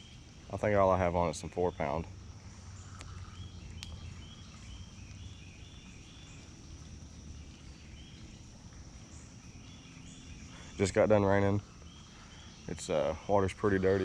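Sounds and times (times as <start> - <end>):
faint clicks: 2.9 - 4.0.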